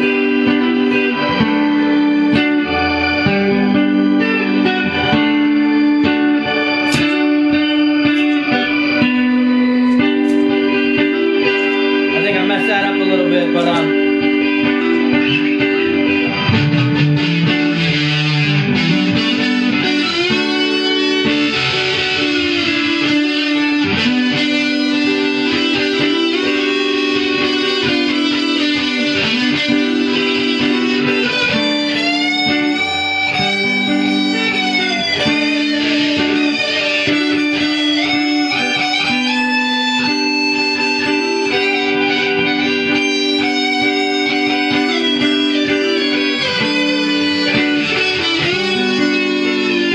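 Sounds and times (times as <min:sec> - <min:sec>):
electric guitar lead lines: 0:00.0 - 0:49.9
looped electric guitar chord: 0:00.0 - 0:49.9.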